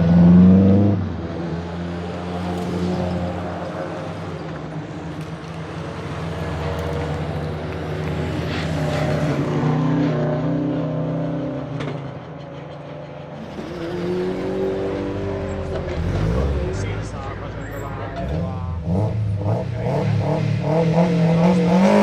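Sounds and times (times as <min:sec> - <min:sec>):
car engine accelerating hard: 0:00.0 - 0:22.0.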